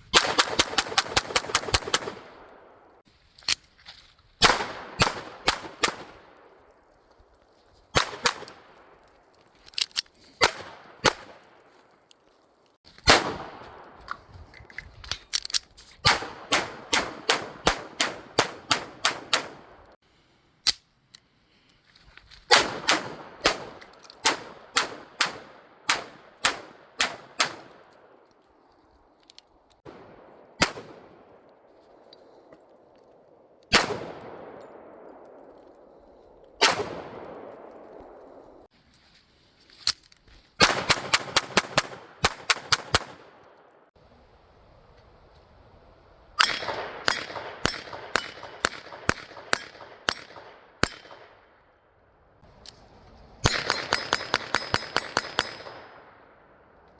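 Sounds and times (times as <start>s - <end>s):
pistol shots: 4.4s - 6.2s, 16.0s - 19.7s, 22.5s - 27.7s, 29.9s - 31.2s, 33.7s - 35.0s, 36.6s - 38.4s, 46.4s - 51.4s, 53.4s - 56.1s.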